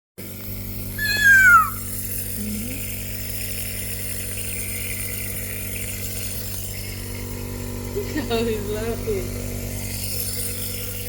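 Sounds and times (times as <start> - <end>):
high squeal falling in pitch: 1.0 - 1.8
compressor humming: 1.0 - 11.0.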